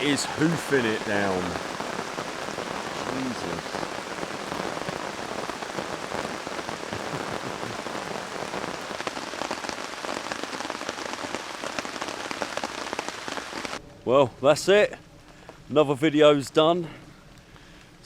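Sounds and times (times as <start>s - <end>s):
heavy rain: 0.0s - 13.8s.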